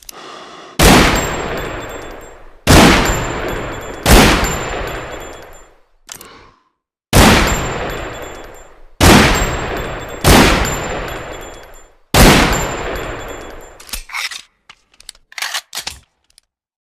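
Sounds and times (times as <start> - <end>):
pistol shots echoing: 0.8 - 5.6, 7.2 - 13.7
metallic clicks and clanks: 12.5 - 16.5.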